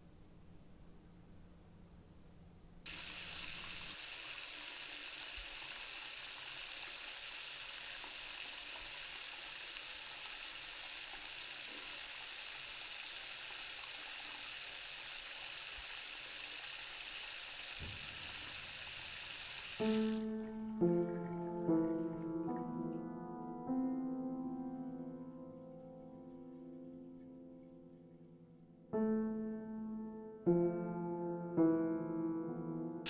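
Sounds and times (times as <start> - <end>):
steady sizzling hiss: 0.0 - 21.0.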